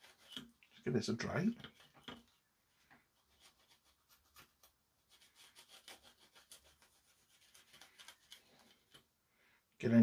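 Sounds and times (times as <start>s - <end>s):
scratchy scrubbing of circuit board: 3.2s - 9.0s.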